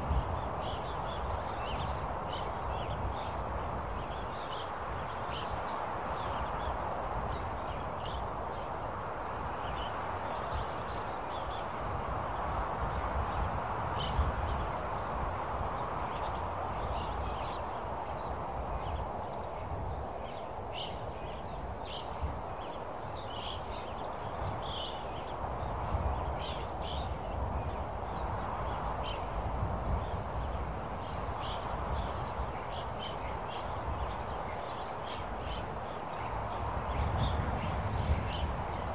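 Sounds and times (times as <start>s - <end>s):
wind rushing: 36.2s - 38.9s.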